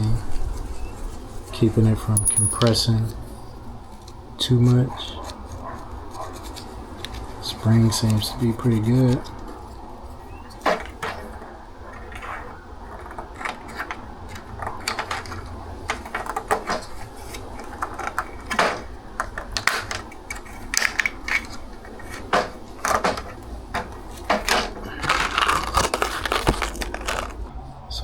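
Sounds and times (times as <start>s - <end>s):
small metal and plastic parts clicking: 12.0s - 27.4s.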